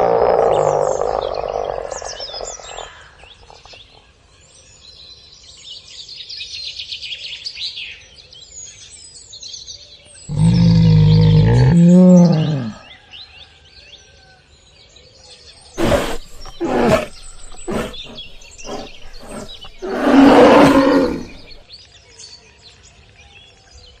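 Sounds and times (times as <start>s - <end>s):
bear growling: 0.0s - 3.0s, 10.3s - 12.8s, 15.8s - 21.6s
birds chirping: 0.4s - 3.9s, 10.3s - 12.8s, 15.8s - 21.6s.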